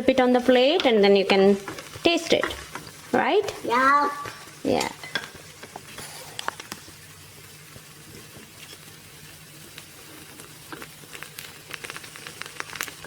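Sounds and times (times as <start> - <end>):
batter sizzling in oil: 0.0 - 13.0
light ticks and pops: 9.7 - 13.0.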